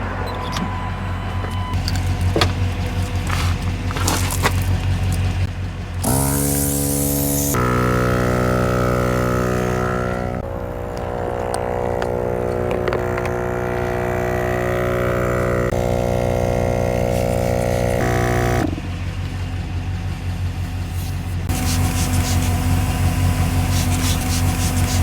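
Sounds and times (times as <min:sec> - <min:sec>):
motor buzzing hum: 0:06.0 - 0:19.0, 0:21.4 - 0:25.0.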